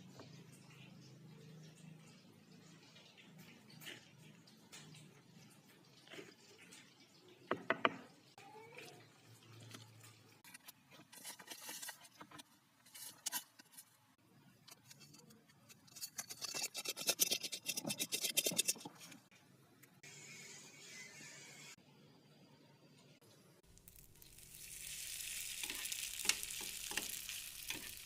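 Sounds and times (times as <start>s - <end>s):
utensils clicking and scraping cookware: 9.6s - 14.0s, 14.6s - 19.3s, 24.9s - 28.0s.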